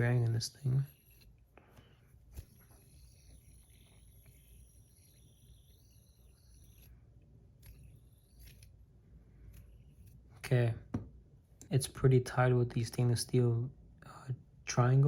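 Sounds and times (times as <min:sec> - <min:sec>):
fidget spinner bearing whirring: 0:00.0 - 0:10.4.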